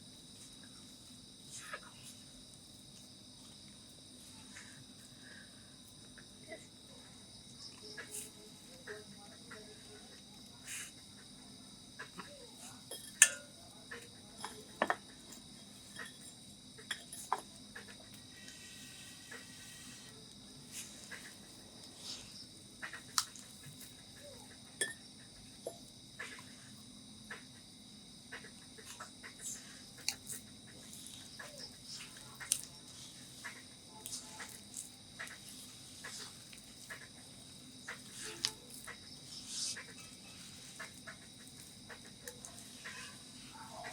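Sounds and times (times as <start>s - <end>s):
crickets chirring: 0.0s - 43.9s
kitchen utensils clinking: 12.9s - 13.6s, 16.9s - 17.5s.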